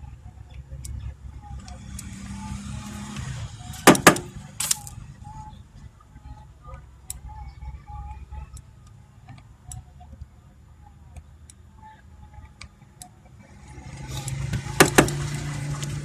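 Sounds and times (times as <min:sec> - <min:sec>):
faint low hum: 0:00.0 - 0:16.0
small tools clicking on circuit board: 0:01.6 - 0:05.0.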